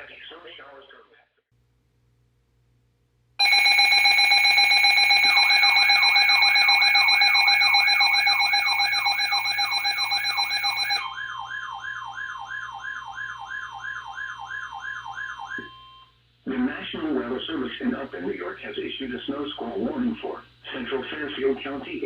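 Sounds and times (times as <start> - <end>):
steady multi-tone alert signal: 3.4 - 12.3
warbling siren-like alarm: 3.4 - 16.0.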